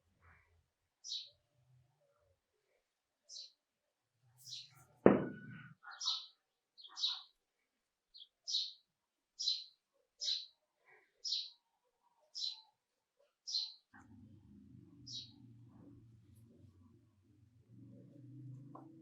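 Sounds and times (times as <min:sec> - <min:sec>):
bird chirping: 0:01.0 - 0:01.4, 0:04.4 - 0:07.4, 0:08.1 - 0:08.8, 0:09.4 - 0:10.6, 0:11.2 - 0:11.6, 0:12.3 - 0:12.8, 0:13.4 - 0:14.2, 0:15.0 - 0:15.5.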